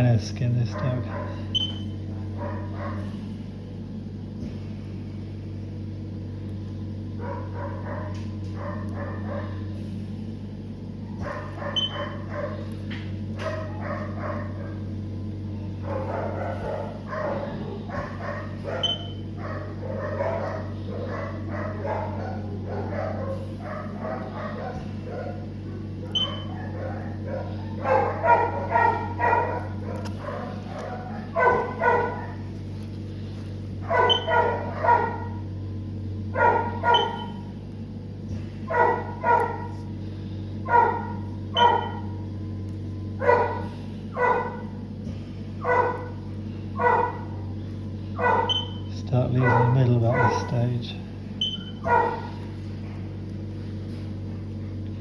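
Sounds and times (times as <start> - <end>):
steady low hum: 0.0 - 55.0
dog barking and yipping: 0.7 - 3.2, 7.2 - 9.6, 11.1 - 12.7, 13.4 - 14.9, 15.8 - 32.6, 33.8 - 35.5, 36.3 - 37.6, 38.6 - 39.9, 40.6 - 42.3, 43.2 - 44.8, 45.6 - 47.5, 48.2 - 50.9, 51.5 - 52.6.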